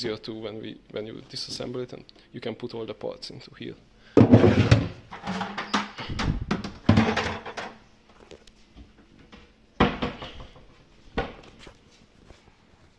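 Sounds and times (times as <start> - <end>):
hard objects clunking: 4.2 - 7.8.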